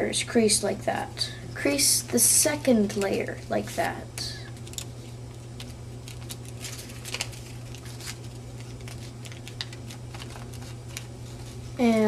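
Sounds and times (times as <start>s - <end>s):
steady low hum: 0.0s - 12.0s
paper being folded and creased: 4.6s - 12.0s.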